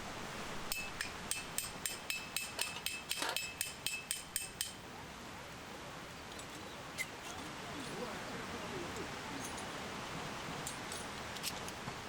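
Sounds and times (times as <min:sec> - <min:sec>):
hammer striking metal tent peg: 0:00.7 - 0:04.8.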